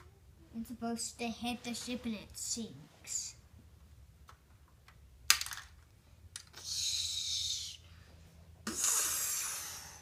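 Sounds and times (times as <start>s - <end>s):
plastic pieces clicking: 4.3s - 6.6s.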